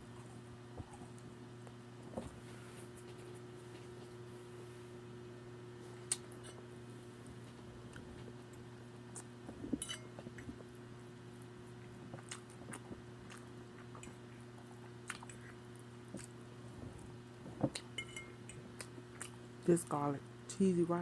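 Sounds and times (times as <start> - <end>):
steady low hum: 0.0 - 21.0
person chewing and smacking: 0.1 - 1.8, 7.9 - 19.4.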